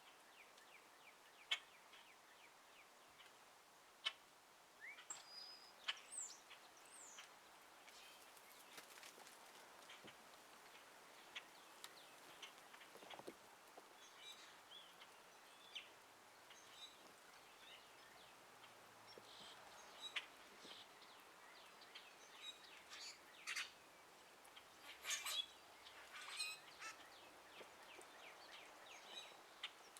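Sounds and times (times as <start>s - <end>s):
songbirds chirping: 0.0s - 29.9s.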